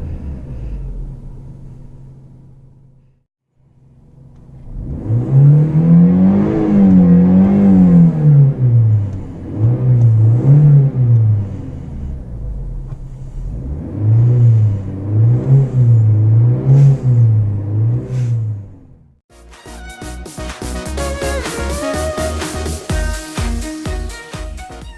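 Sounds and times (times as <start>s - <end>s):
car engine revving: 3.8s - 19.2s.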